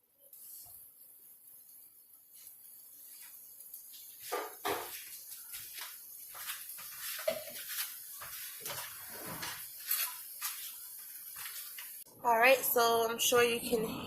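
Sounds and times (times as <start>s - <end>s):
oil sizzling faintly: 0.0s - 13.8s
utensil scraping a pot: 6.3s - 11.8s.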